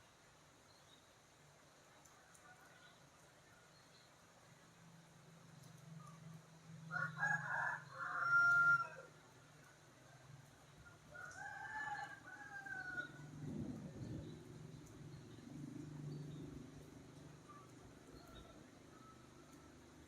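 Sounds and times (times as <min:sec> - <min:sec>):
rooster crowing: 0:06.9 - 0:09.2, 0:11.1 - 0:13.4.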